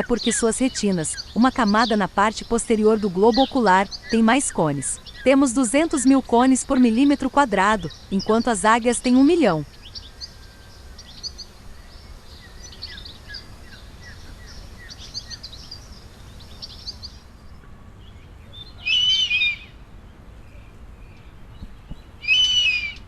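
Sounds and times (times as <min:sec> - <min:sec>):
loud falling bird call: 0:18.8 - 0:19.7, 0:22.2 - 0:23.0.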